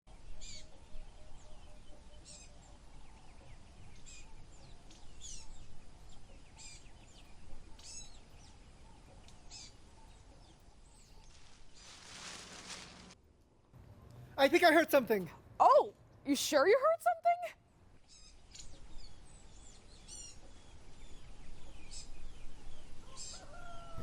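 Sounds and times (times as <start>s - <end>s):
bird chirping: 0.2s - 12.3s.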